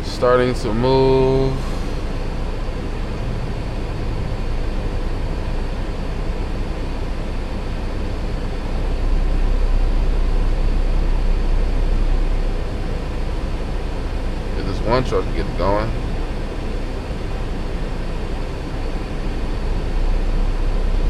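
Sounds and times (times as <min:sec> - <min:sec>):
diesel truck engine idling: 0:00.0 - 0:21.0.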